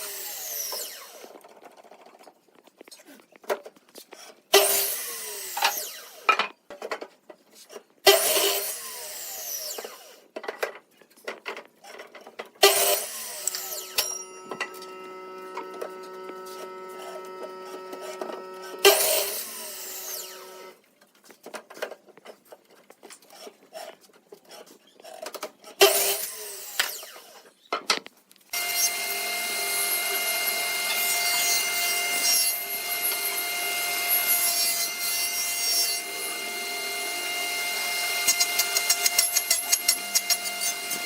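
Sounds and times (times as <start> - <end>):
power saw cutting wood: 0.0 - 1.6, 4.2 - 6.4, 8.0 - 10.3, 12.6 - 20.8, 23.3 - 27.5, 28.5 - 41.0.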